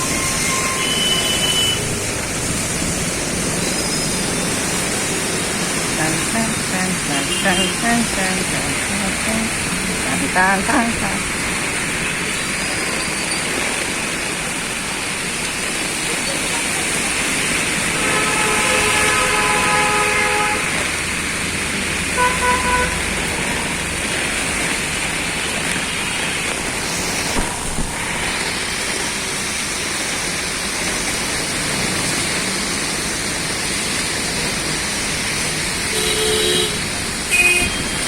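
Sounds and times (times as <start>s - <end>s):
vehicle horns honking: 0.0s - 1.8s, 6.1s - 8.1s, 17.9s - 20.9s, 22.2s - 23.1s, 35.9s - 38.0s
traffic hiss: 0.0s - 38.0s.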